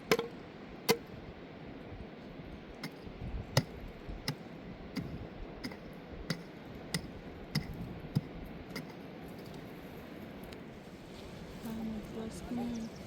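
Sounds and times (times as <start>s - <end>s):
steady background hiss: 0.0s - 13.0s
sharp evenly spaced knocks: 2.8s - 9.6s.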